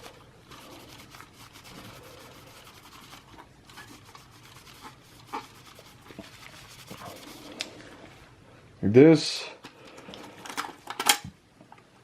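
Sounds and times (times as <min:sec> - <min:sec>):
paper towel scrubbing metal: 0:00.0 - 0:07.7.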